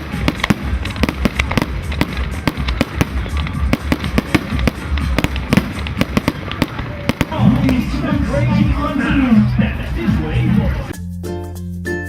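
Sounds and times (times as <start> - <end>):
fireworks cracking and popping: 0.0 - 9.3
music with deep pulsing bass: 0.0 - 12.0.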